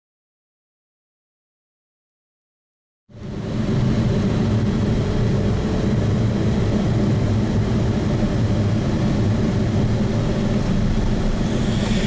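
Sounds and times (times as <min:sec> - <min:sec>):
car engine drone: 0:09.6 - 0:12.0
road noise: 0:09.9 - 0:12.0.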